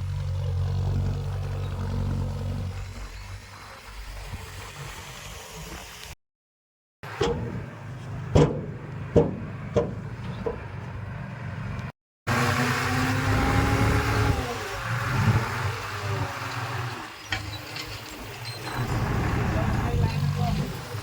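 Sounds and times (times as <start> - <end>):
heavy machinery engine hum: 0.0 - 3.5, 7.0 - 21.0
sharp knocks: 8.3 - 10.6.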